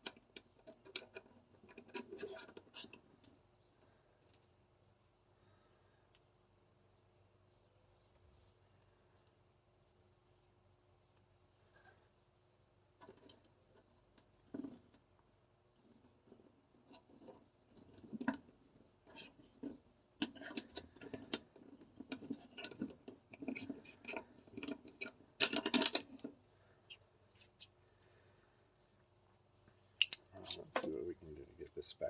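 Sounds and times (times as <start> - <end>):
pistol parts clicking and scraping: 15.8 - 28.2, 29.3 - 31.0.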